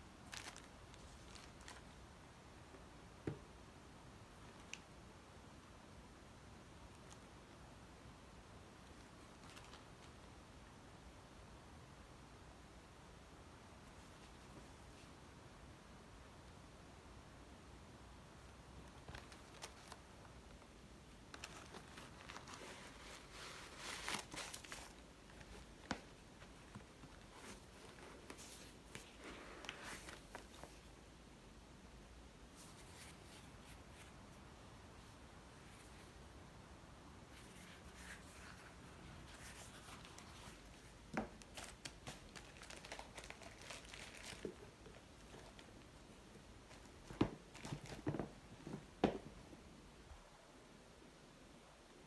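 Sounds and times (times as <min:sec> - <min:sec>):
soft rustling and crinkling: 0:00.1 - 0:02.1, 0:04.3 - 0:05.0, 0:08.7 - 0:10.4, 0:13.7 - 0:15.4, 0:18.4 - 0:31.1, 0:32.4 - 0:36.4, 0:37.2 - 0:50.3.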